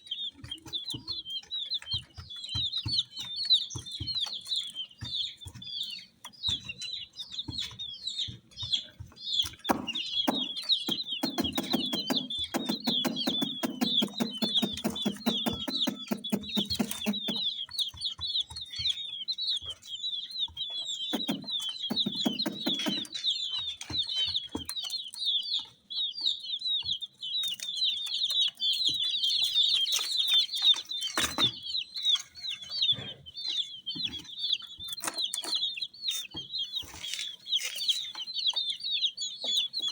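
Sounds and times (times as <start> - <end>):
baby chicks peeping: 0.0 - 39.9
rapid clicking: 9.7 - 17.4.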